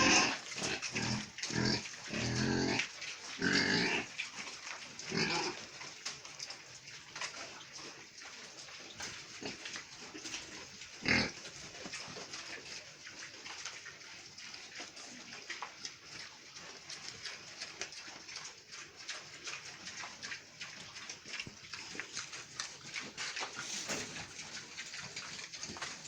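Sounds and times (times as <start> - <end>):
loud pig call: 0.0 - 2.8, 3.4 - 4.1, 5.1 - 5.6
rustling: 21.2 - 26.0.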